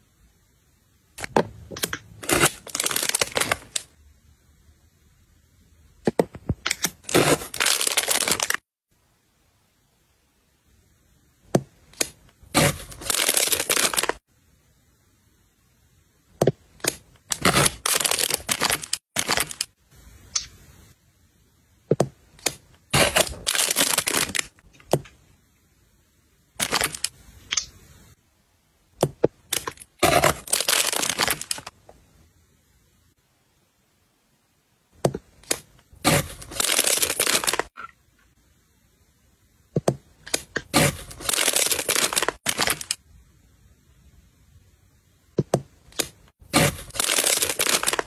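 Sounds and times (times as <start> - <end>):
packaging crinkling and tearing: 2.2 - 3.9, 6.8 - 8.6, 12.6 - 14.2, 17.3 - 19.7, 23.0 - 24.6, 26.6 - 27.1, 29.5 - 31.7, 35.4 - 37.8, 40.3 - 43.0, 46.0 - 48.0
sharp clicks and snaps: 20.3 - 20.6, 26.6 - 27.8.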